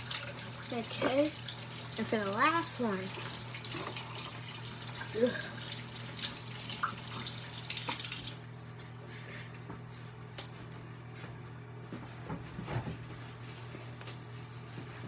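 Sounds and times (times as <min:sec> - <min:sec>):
water running from tap: 0:00.0 - 0:08.5.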